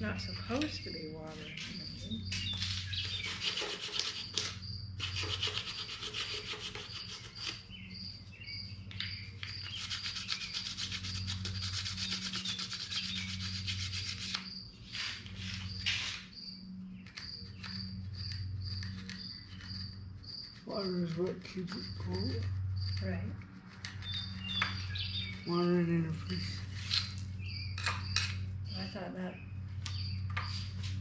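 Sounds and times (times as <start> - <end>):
hand sanding strokes: 2.4 - 7.7, 9.5 - 16.3.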